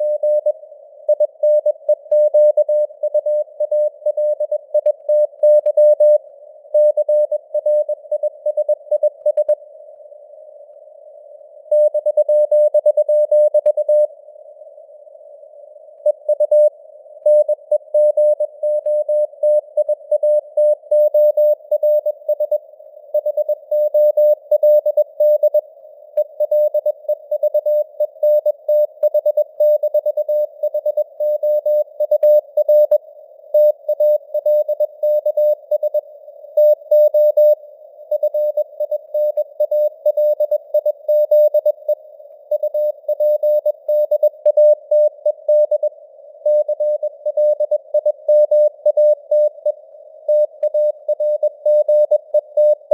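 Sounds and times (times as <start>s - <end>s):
morse code beeps: 26.2s - 33.0s, 33.6s - 36.0s, 36.6s - 45.9s, 46.5s - 49.7s, 50.3s - 52.9s.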